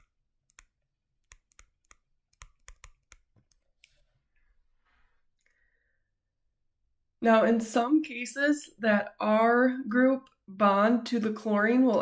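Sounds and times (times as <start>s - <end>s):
faint irregular clicks: 0.0s - 4.0s.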